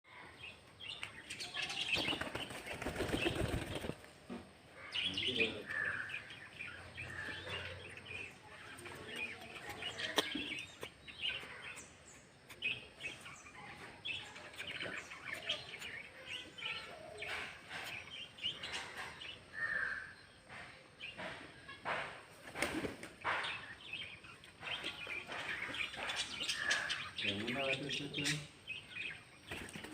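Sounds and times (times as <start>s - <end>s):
birds flapping wings: 1.8s - 4.2s, 22.3s - 23.2s, 29.5s - 29.9s.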